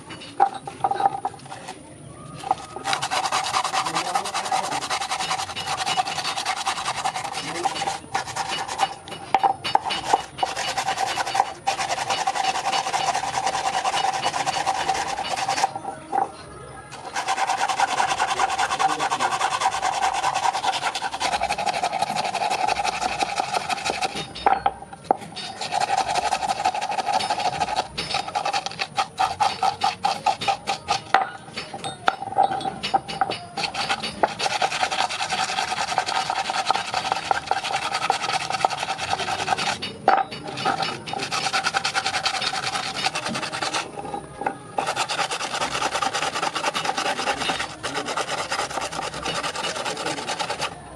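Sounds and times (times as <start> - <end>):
abrasive rasping on steel: 0.0 - 50.9.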